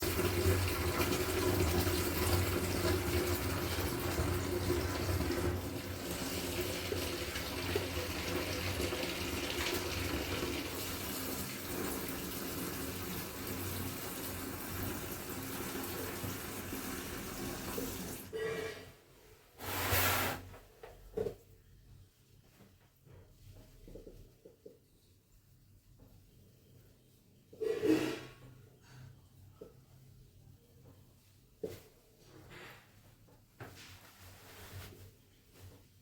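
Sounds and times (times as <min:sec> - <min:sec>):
water running from a tap: 0:00.0 - 0:18.3.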